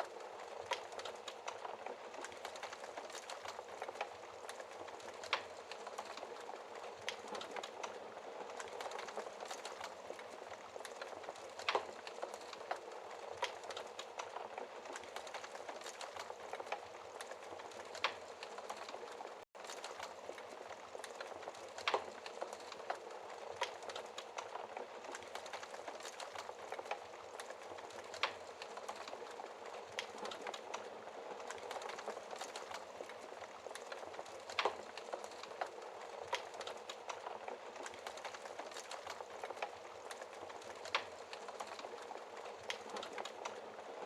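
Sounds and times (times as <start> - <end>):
wood fire crackling: 0.0 - 44.0.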